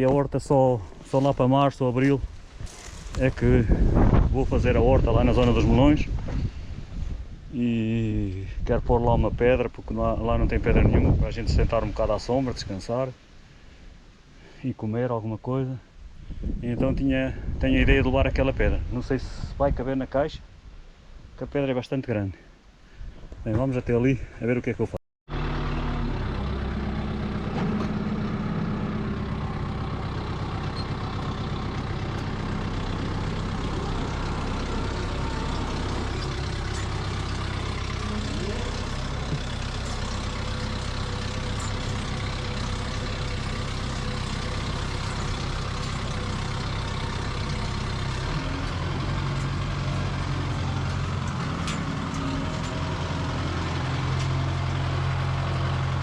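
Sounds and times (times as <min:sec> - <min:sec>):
diesel tractor engine running: 0:00.0 - 0:07.3, 0:25.3 - 0:56.0.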